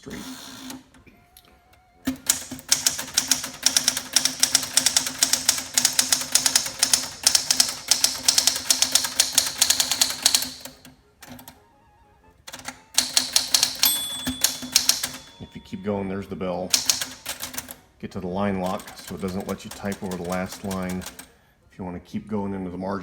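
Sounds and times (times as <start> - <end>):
manual typewriter typing: 2.1 - 11.6, 12.5 - 15.7, 16.6 - 17.8, 18.4 - 21.3.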